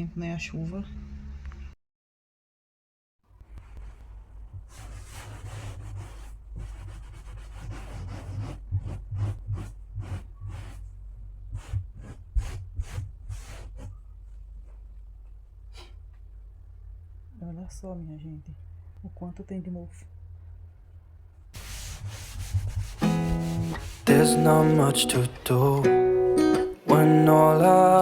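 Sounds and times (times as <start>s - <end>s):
cloth wiping a surface: 3.6s - 14.1s, 21.6s - 25.3s
steady low hum: 3.9s - 24.1s.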